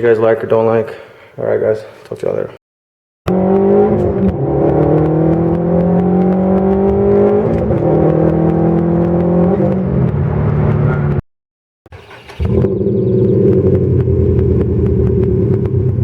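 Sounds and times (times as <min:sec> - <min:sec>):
car engine running: 0:03.3 - 0:11.2, 0:12.0 - 0:16.0.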